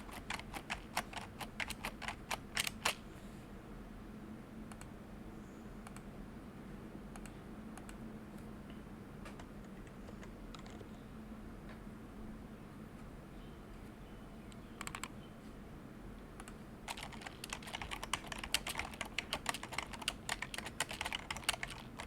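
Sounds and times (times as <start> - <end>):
keyboard typing: 0.0 - 3.0, 9.3 - 10.9, 14.8 - 15.1, 16.4 - 22.0.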